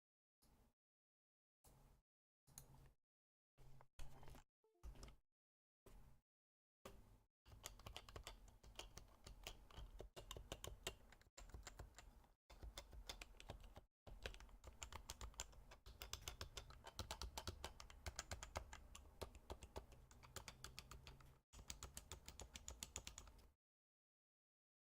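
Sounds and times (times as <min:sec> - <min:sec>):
keyboard typing: 0:07.5 - 0:23.5.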